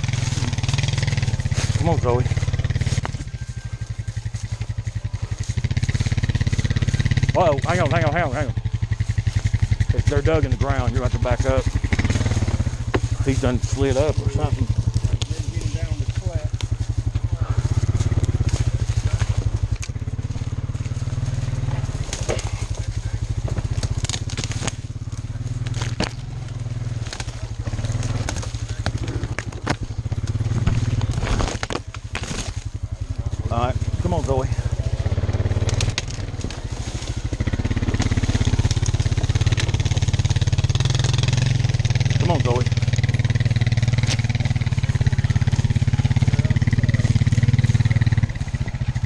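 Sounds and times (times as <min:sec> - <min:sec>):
atv engine running: 0:00.0 - 0:49.0
sticks snapping: 0:18.0 - 0:20.0, 0:23.7 - 0:25.0, 0:25.6 - 0:32.7, 0:35.5 - 0:42.2.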